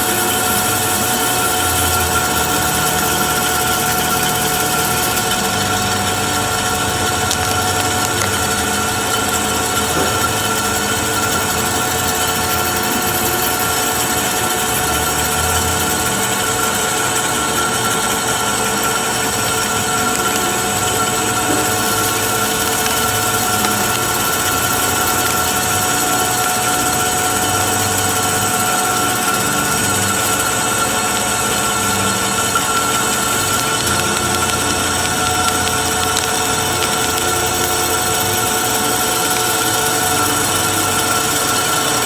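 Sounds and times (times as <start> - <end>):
metalworking machine whining: 0.0 - 42.0.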